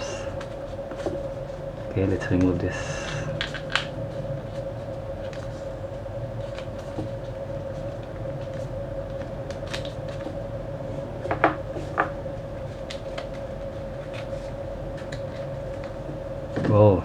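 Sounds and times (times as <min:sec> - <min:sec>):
steady hum: 0:00.0 - 0:17.0
packaging clicks and rustles: 0:02.3 - 0:04.0.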